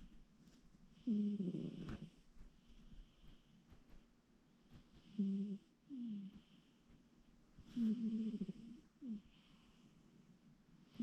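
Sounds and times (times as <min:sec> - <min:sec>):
cat breathing faintly: 0:01.7 - 0:04.0.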